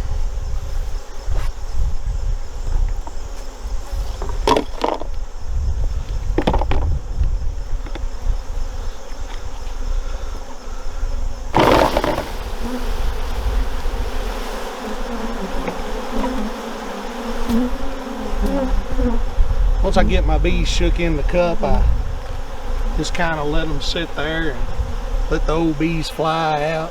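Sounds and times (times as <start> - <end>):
honeybees buzzing: 0.0 - 26.9
loud burst of noise: 11.6 - 13.4.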